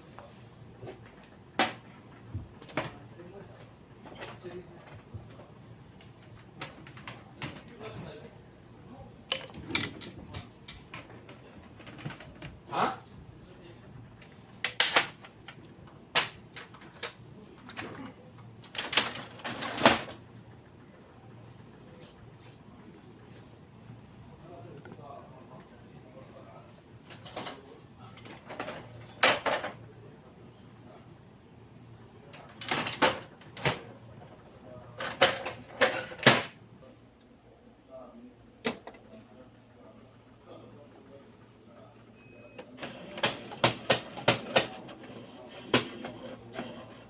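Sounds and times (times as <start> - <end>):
printer parts clicking and knocking: 6.0 - 8.0, 9.3 - 12.6, 14.2 - 20.2, 27.0 - 29.8, 32.3 - 34.0, 34.9 - 36.6, 38.6 - 39.0, 42.8 - 45.0.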